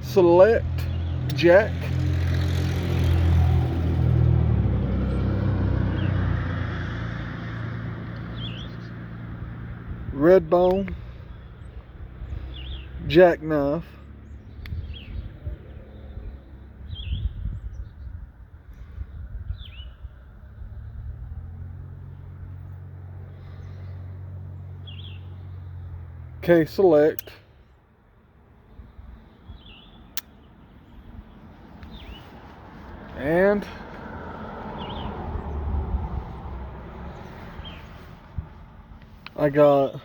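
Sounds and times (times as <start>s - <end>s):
vehicle engine humming: 0.0s - 17.7s, 19.6s - 40.0s
vehicle engine running: 0.7s - 10.0s
bird chirping: 8.2s - 9.0s, 23.4s - 25.9s, 29.4s - 32.5s, 37.1s - 40.0s.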